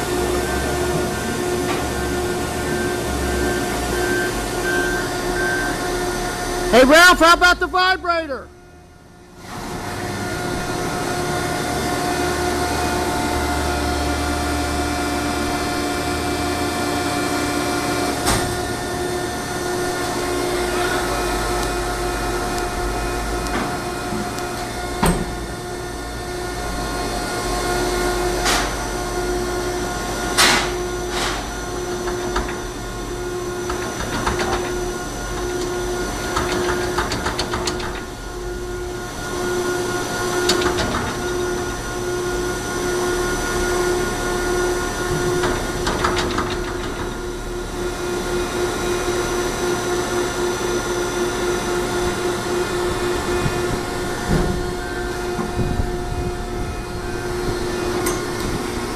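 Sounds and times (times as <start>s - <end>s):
baling machine humming: 0.0s - 58.9s.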